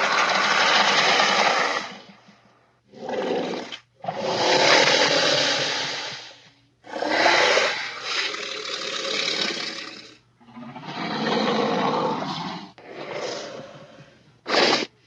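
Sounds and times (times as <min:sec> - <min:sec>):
harsh dinosaur roars: 0:00.0 - 0:02.1, 0:06.8 - 0:14.6.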